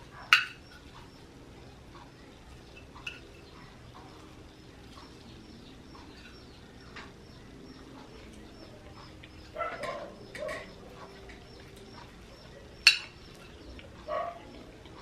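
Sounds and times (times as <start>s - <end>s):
birds chirping faintly: 0.0s - 15.0s
loud bird calls: 2.0s - 15.0s.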